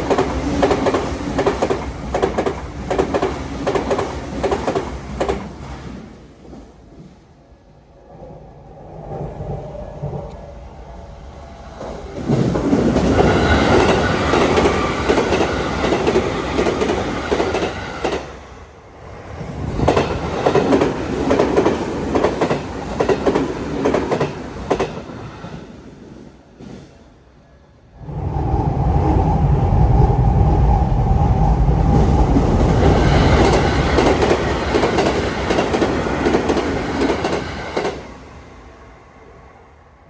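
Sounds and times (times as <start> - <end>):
train wheels clacking over rail joints: 0.0 - 5.5, 12.3 - 18.3, 32.8 - 38.0
electric train passing: 0.0 - 40.0.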